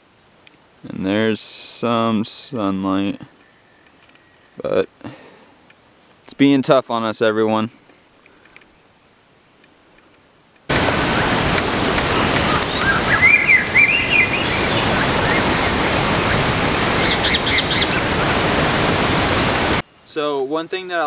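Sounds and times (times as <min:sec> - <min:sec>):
wind blowing on microphone: 0:10.7 - 0:19.8
small bird chirping: 0:11.6 - 0:18.3.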